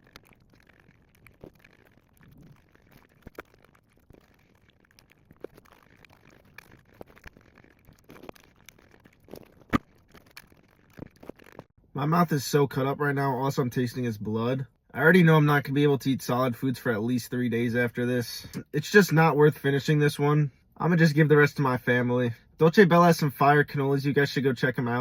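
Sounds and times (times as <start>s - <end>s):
crunchy chewing: 0.0s - 11.7s.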